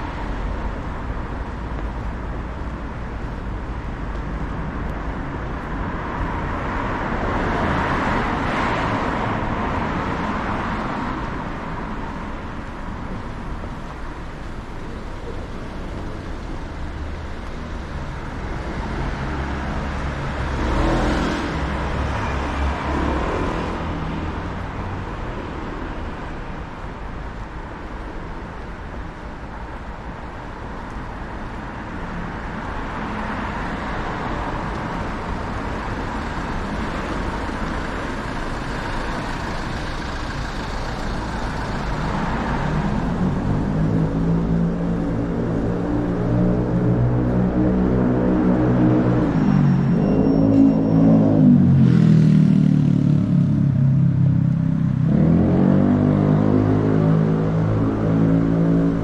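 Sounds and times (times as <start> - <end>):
cars passing: 0.0 - 59.0
traffic din: 0.0 - 59.0
loud vehicle engine passing: 36.2 - 59.0.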